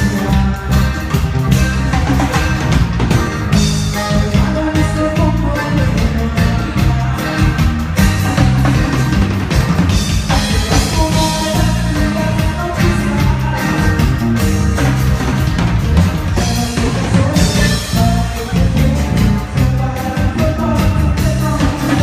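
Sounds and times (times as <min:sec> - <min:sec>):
person singing: 0:00.0 - 0:02.6, 0:03.6 - 0:09.4, 0:10.3 - 0:22.0
drum kit: 0:00.0 - 0:22.0
guitar: 0:00.0 - 0:22.0
heavy bass: 0:00.0 - 0:22.0.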